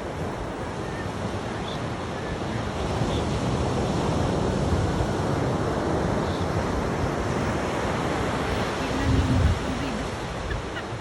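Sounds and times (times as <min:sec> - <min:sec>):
ocean surf washing ashore: 0:00.0 - 0:11.0
wind buffeting microphone: 0:03.7 - 0:11.0.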